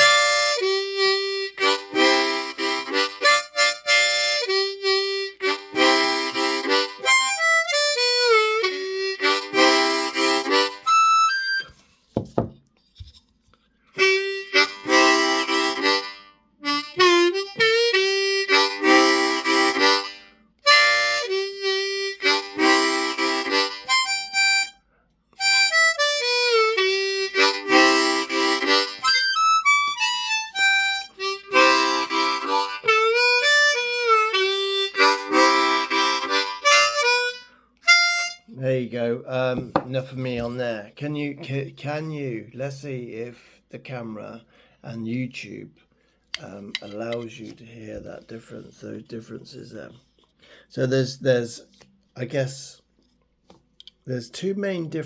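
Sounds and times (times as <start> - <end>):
harmonica blues riffs: 0.0 - 11.8, 14.0 - 40.6.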